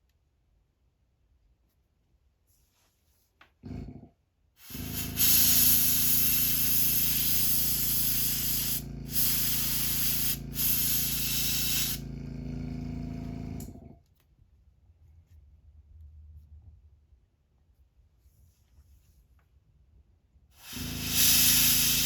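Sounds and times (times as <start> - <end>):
airbrush spraying hiss: 4.6 - 12.1, 20.6 - 22.0
air compressor motor humming: 4.6 - 14.0, 20.6 - 22.0.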